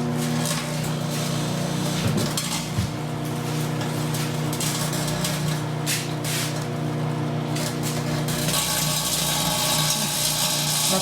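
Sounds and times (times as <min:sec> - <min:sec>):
microwave oven humming: 0:00.0 - 0:11.0
welding rod arcing crackle: 0:07.5 - 0:11.0.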